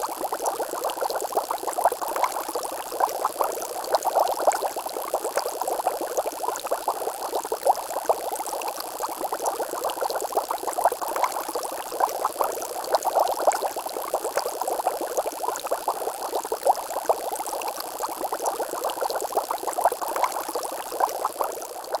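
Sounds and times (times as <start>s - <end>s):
water bubbling: 18.2s - 22.0s.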